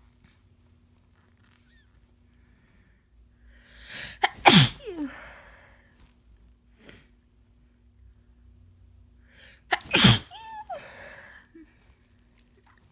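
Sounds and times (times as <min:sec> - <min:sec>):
woman sneezing: 0:03.9 - 0:05.3, 0:09.7 - 0:11.3.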